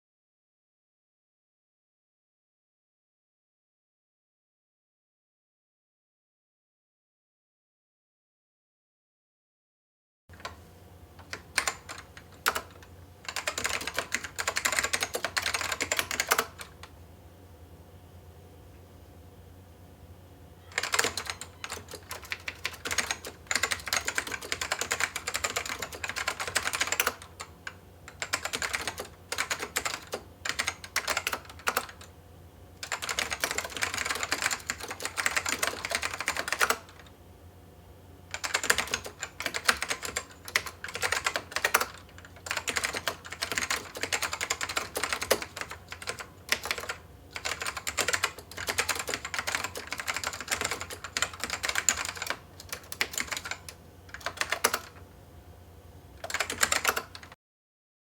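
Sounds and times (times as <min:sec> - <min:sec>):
mechanical keyboard typing: 0:11.2 - 0:16.9, 0:20.7 - 0:32.1, 0:32.8 - 0:37.1, 0:38.3 - 0:55.0, 0:56.2 - 0:57.4.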